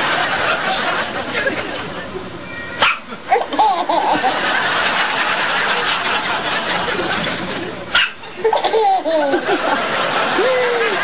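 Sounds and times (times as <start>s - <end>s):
baby chuckling: 3.2s - 4.4s, 8.0s - 9.7s.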